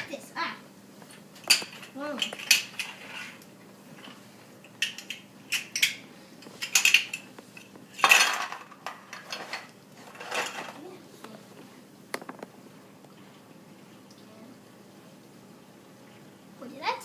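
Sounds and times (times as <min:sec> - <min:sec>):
wooden blocks clattering: 0:08.0 - 0:10.8.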